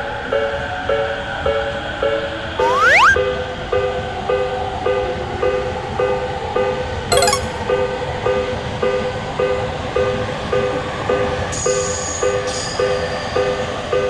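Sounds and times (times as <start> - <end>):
short high-pitched tones: 2.6 - 3.2, 7.1 - 7.6.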